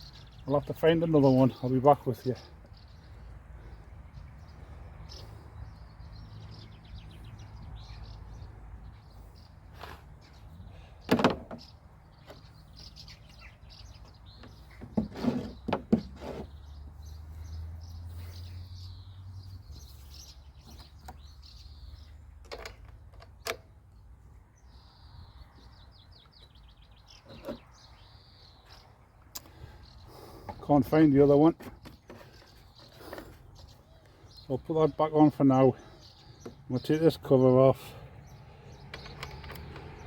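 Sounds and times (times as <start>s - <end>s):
small birds chirping: 0.0s - 40.0s
knocks and clatter of handling: 22.4s - 23.6s.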